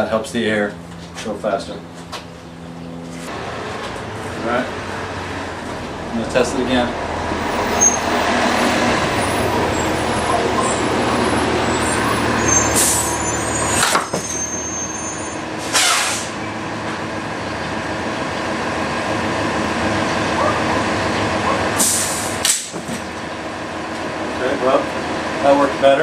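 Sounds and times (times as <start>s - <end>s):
steady mechanical hum: 0.0s - 7.7s
compressed air hissing: 21.8s - 22.8s.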